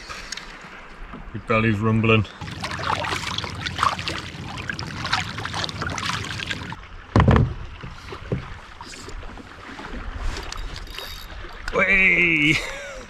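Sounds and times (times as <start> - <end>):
water lapping against kayak: 2.2 - 13.0
loud thump on hull: 2.4 - 8.6.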